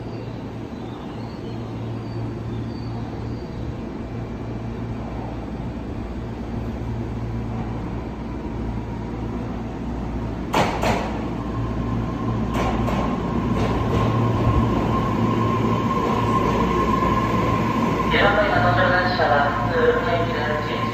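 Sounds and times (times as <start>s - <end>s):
electric train equipment humming: 1.5s - 20.9s
sharp knocks: 10.5s - 11.2s.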